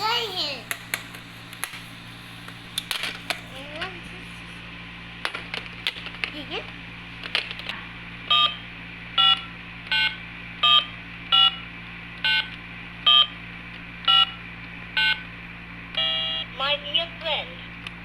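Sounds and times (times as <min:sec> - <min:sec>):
electronic toy beeping: 0:16.0 - 0:16.4.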